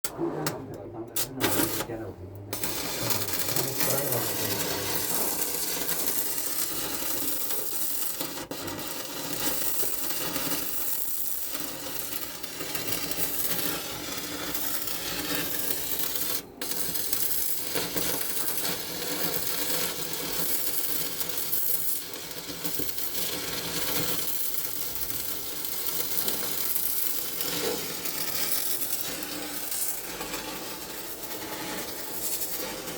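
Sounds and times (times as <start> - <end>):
welding arc crackling: 0.0 - 32.9.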